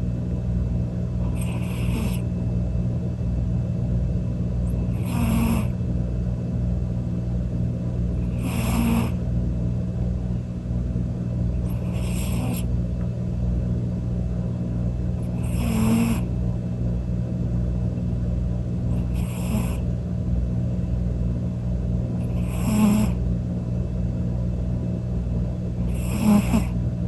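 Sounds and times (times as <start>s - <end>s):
cat snoring: 1.2s - 2.3s, 4.7s - 5.8s, 8.2s - 9.2s, 11.6s - 12.7s, 15.2s - 16.3s, 18.9s - 19.9s, 22.2s - 23.2s, 25.8s - 26.8s.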